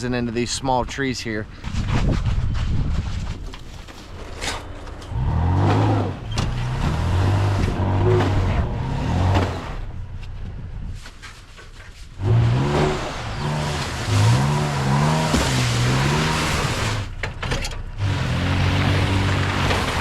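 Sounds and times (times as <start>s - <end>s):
pickup truck engine revving: 5.0s - 10.0s, 12.2s - 17.1s, 18.0s - 20.0s.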